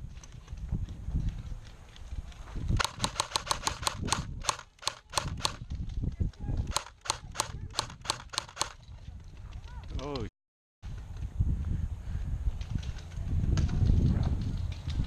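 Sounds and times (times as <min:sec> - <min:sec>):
airsoft gun rapid firing: 0:02.8 - 0:05.6, 0:06.7 - 0:08.8.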